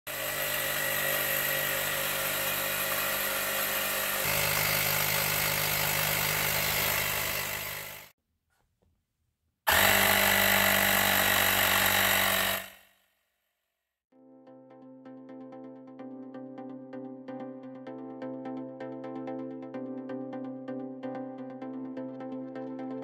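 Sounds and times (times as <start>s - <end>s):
air compressor motor hum: 0.1s - 8.1s, 9.7s - 12.8s.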